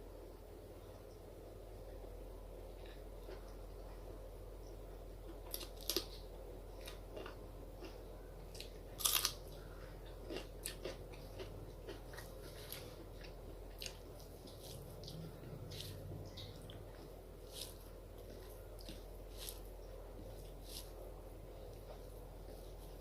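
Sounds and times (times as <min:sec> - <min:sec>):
person chewing: 0:05.2 - 0:06.2, 0:06.8 - 0:21.0.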